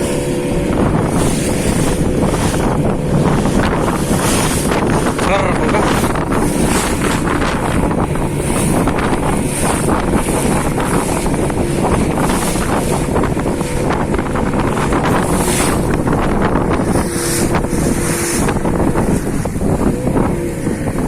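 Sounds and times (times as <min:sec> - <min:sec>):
boat engine running: 0:00.0 - 0:21.0
wind buffeting microphone: 0:00.0 - 0:21.0.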